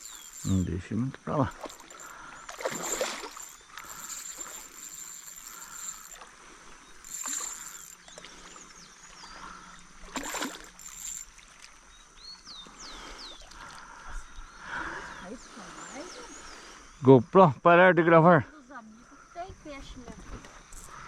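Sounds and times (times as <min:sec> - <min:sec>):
birds chirping: 0:00.0 - 0:21.0
water splashing: 0:01.4 - 0:04.7, 0:10.0 - 0:11.9.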